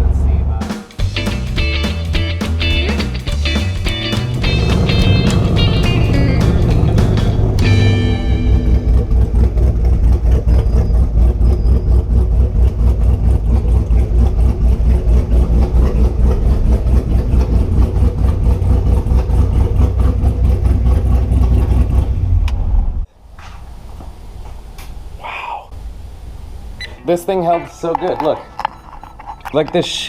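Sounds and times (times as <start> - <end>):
car engine running: 1.0 - 10.5.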